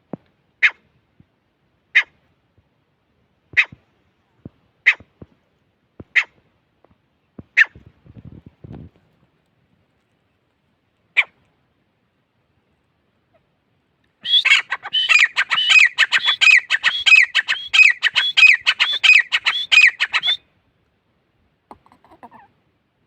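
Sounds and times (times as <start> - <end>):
francolin calling: 14.2 - 20.4.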